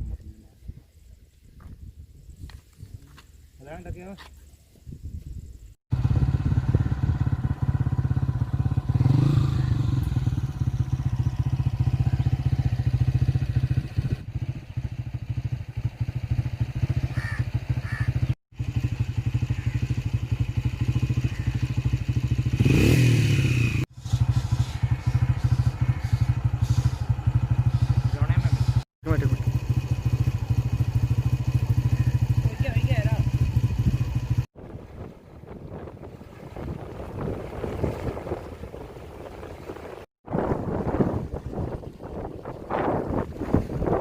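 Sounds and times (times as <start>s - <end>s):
small engine running: 5.9s - 23.0s, 23.9s - 34.4s.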